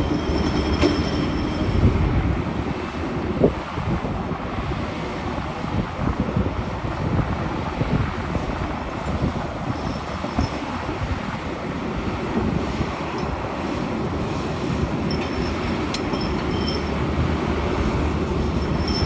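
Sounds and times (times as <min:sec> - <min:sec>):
excavator engine rumbling: 0:00.0 - 0:03.8, 0:08.4 - 0:19.0.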